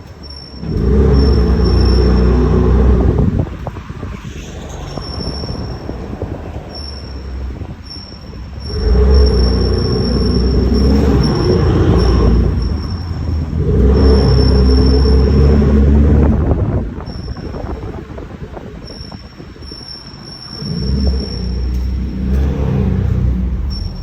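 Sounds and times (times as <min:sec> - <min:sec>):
brakes grinding and squealing: 0:00.0 - 0:24.0
thin high whistle: 0:04.6 - 0:06.1, 0:06.7 - 0:15.8, 0:17.0 - 0:17.9, 0:18.8 - 0:21.9.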